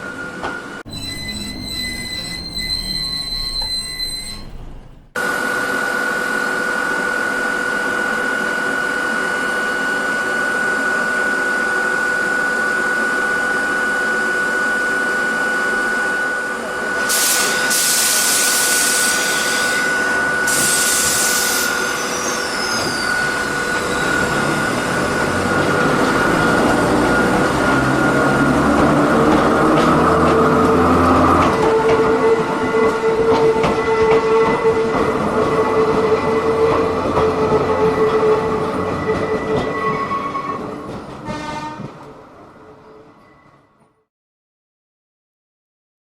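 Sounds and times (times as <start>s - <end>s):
electric railcar running drone: 0.0s - 43.4s
air hisses: 17.0s - 19.9s, 20.5s - 22.7s.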